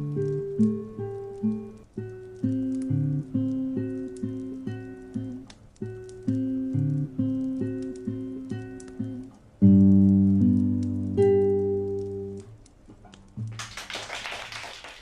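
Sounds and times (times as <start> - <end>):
audience clapping: 13.4 - 15.0.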